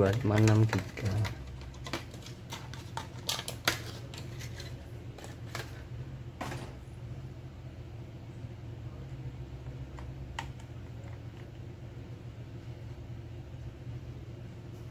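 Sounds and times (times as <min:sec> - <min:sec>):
small hard parts clicking: 0:00.0 - 0:05.6
steady low hum: 0:00.0 - 0:14.9.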